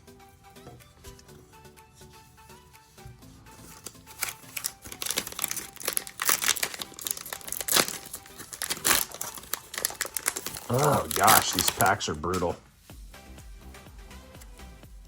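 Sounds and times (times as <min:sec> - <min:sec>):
foil wrapper tearing and crinkling: 0:03.6 - 0:12.5.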